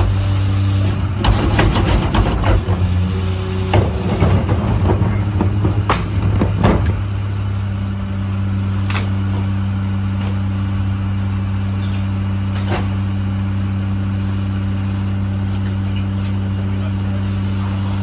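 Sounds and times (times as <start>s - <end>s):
garbage truck diesel engine: 0.0s - 18.0s
clattering and knocks: 1.0s - 3.0s.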